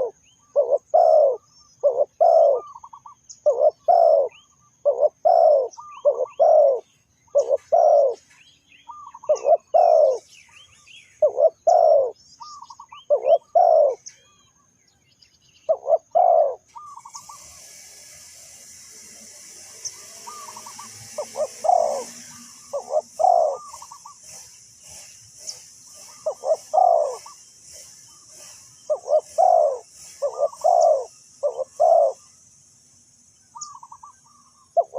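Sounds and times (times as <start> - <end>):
dove cooing: 0.0 - 8.3, 8.9 - 10.2, 11.2 - 14.1, 15.7 - 17.8, 19.9 - 24.5, 26.0 - 27.4, 28.4 - 32.2, 33.6 - 34.9
steady high hiss: 16.0 - 34.9.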